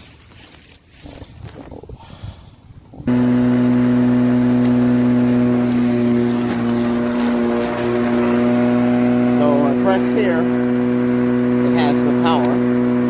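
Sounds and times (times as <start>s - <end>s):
electric lawn mower humming: 3.1s - 13.0s.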